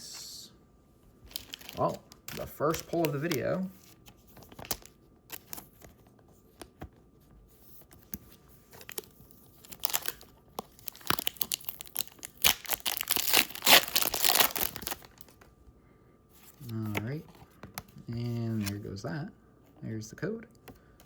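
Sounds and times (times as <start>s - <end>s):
foil wrapper crinkling and tearing: 1.3s - 3.7s, 4.5s - 5.7s, 8.7s - 15.4s.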